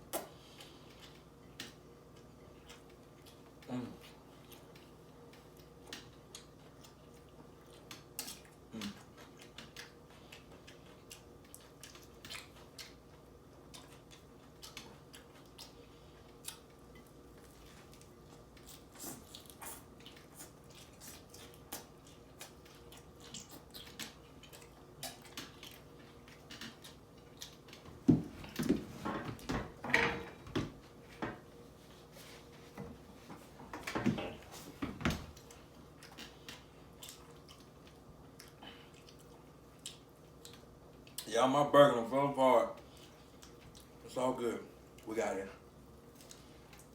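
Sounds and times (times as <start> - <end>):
chewing and lip smacking: 0.0 - 28.6, 35.3 - 41.4, 42.8 - 44.1, 46.0 - 46.9.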